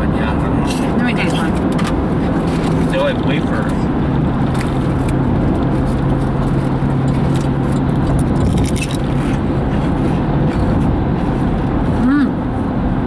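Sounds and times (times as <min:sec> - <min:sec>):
car road and engine noise: 0:00.0 - 0:13.0
crunchy snack being chewed: 0:05.8 - 0:11.7.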